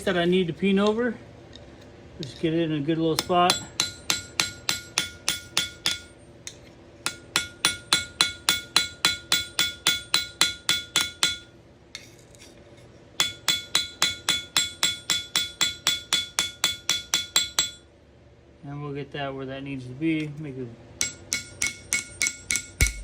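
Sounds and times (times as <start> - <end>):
hammer tapping on metal: 3.2 - 6.2, 7.0 - 11.5, 13.2 - 17.8, 21.0 - 23.0.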